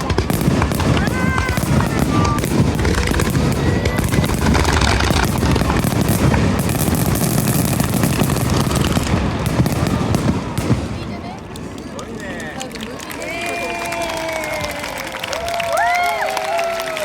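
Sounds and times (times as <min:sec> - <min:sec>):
fireworks booming and crackling: 0:00.0 - 0:13.0.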